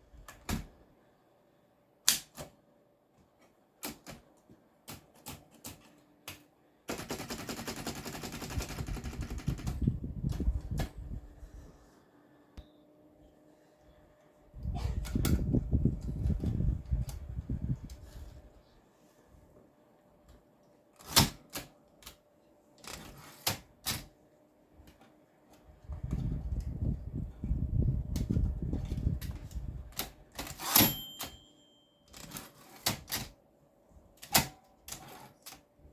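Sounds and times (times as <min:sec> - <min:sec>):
typewriter rattling and clacking: 0:06.9 - 0:09.8
typewriter bell ringing: 0:30.6 - 0:32.5.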